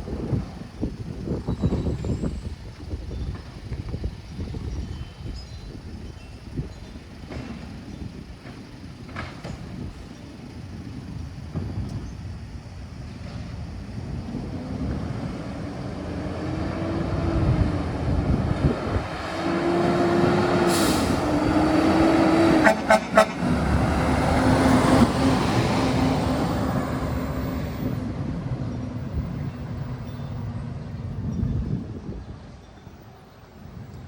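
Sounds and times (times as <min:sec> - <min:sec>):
diesel truck engine pulling away: 0:07.0 - 0:34.0
air brakes hissing: 0:20.5 - 0:21.6
truck horn toots: 0:22.2 - 0:24.1.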